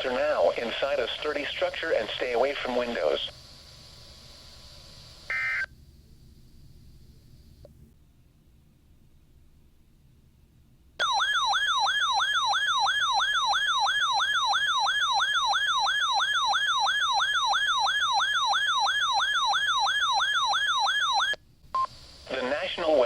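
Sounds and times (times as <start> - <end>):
electronic siren alert tone: 11.0 - 21.4.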